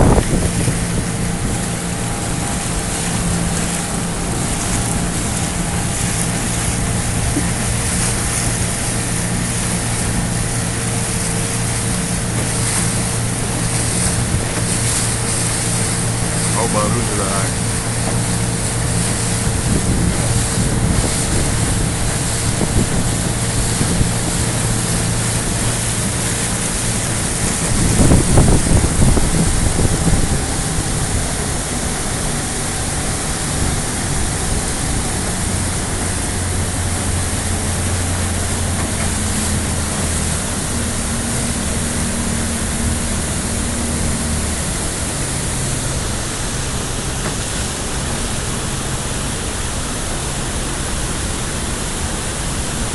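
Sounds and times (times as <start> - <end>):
boat motor humming: 0.0 - 52.9
rush of wind and water: 0.0 - 52.9.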